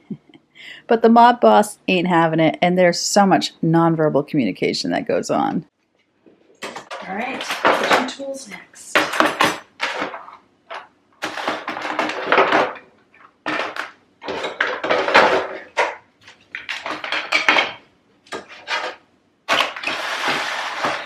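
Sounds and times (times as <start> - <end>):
kitchen utensils clattering: 6.6 - 8.4, 9.0 - 21.0.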